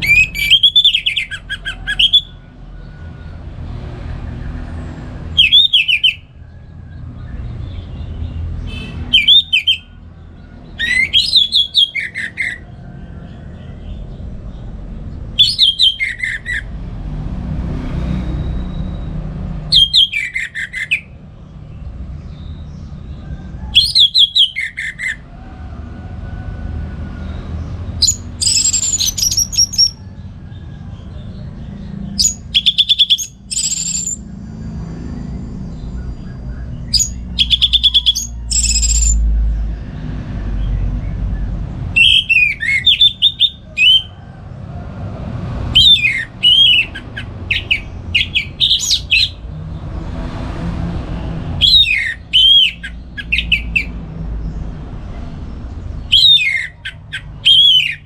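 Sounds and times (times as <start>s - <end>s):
thrush singing: 0.0s - 2.6s, 4.7s - 6.4s, 8.6s - 16.8s, 19.6s - 21.2s, 32.1s - 34.3s, 36.8s - 39.5s, 41.8s - 54.4s, 55.6s - 58.0s.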